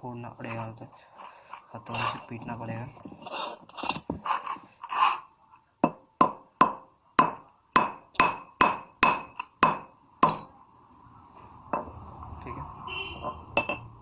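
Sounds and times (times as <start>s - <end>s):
hammer tapping metal part: 5.8s - 10.5s.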